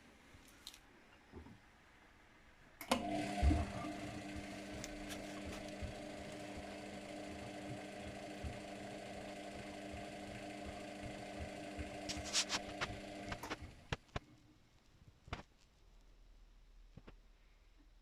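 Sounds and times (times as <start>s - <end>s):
washing machine motor humming: 2.8s - 13.9s.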